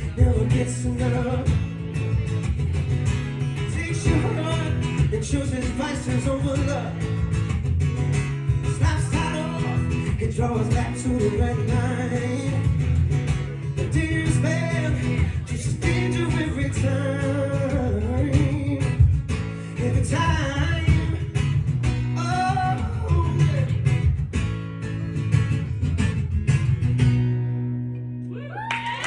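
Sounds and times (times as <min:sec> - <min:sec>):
person singing wordless phrases: 0:00.0 - 0:01.6, 0:03.6 - 0:07.0, 0:08.6 - 0:19.1, 0:22.2 - 0:23.8
guitar chords: 0:00.0 - 0:28.4.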